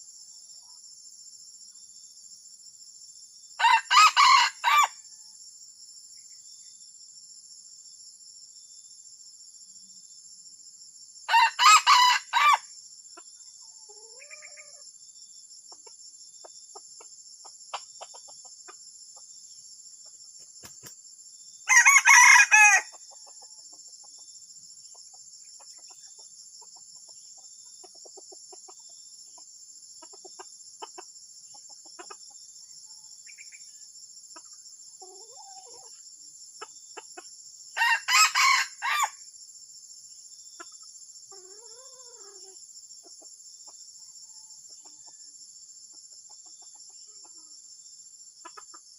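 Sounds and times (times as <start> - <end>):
high insect drone: 0.0 - 48.9
rooster crowing: 3.6 - 5.0, 11.3 - 12.7, 21.7 - 23.0, 37.8 - 39.2
faint chirps: 13.0 - 21.8.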